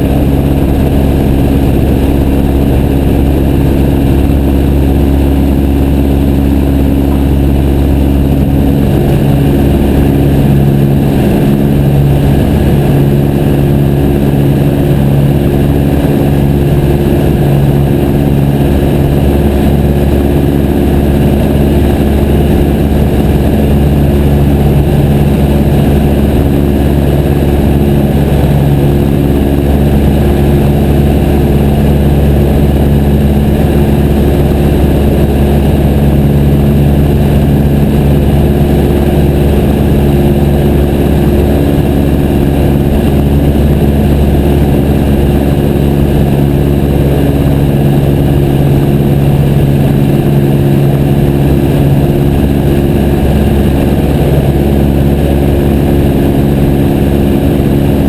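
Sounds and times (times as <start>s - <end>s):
propeller plane engine running: 0.0s - 58.0s.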